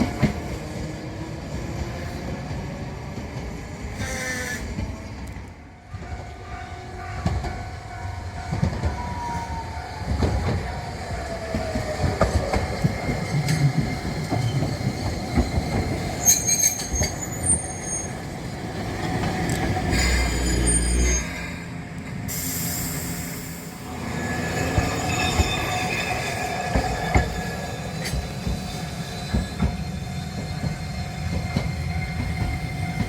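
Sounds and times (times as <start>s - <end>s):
wheels rumbling on rails: 4.6s - 33.0s
high-pitched wheel squeals: 15.5s - 18.3s, 19.9s - 21.6s, 23.9s - 32.9s.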